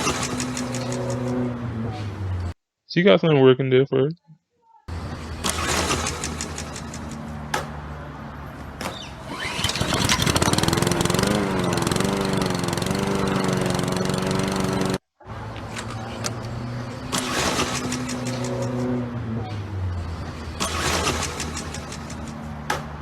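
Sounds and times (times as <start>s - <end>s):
engine clicks: 0.0s - 1.4s, 5.3s - 7.8s, 8.5s - 15.0s, 15.6s - 18.8s
lawn mower engine running: 0.0s - 1.5s, 4.9s - 19.0s.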